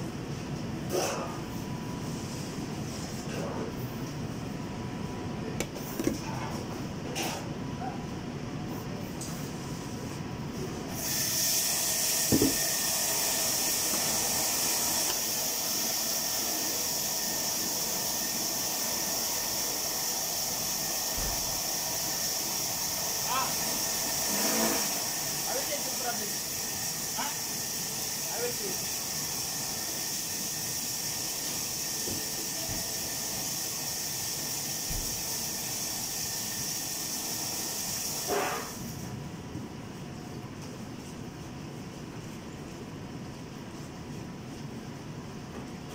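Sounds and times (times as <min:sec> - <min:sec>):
food sizzling in hot oil: 0:11.0 - 0:19.4.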